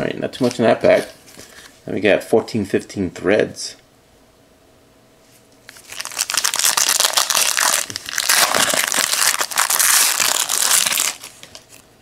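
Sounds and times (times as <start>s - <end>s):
foil wrapper tearing and crinkling: 5.7s - 11.8s.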